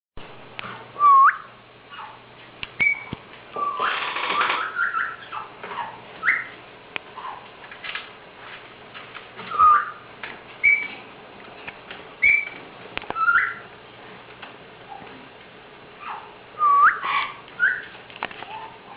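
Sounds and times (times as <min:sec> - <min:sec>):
parrot whistling: 0:01.0 - 0:02.1, 0:02.8 - 0:05.5, 0:06.2 - 0:06.6, 0:09.5 - 0:10.0, 0:10.6 - 0:11.0, 0:12.2 - 0:13.6, 0:16.0 - 0:17.9.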